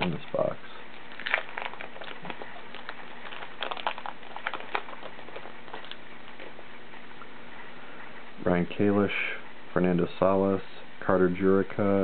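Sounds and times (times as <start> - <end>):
faint hum: 0.0 - 12.0
wrapper crinkling: 0.9 - 6.5.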